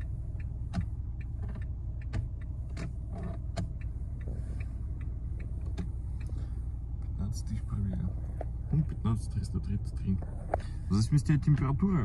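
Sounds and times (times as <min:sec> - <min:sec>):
stalk switch clicks and creaks: 0:00.0 - 0:07.2
low car hum: 0:00.0 - 0:12.0.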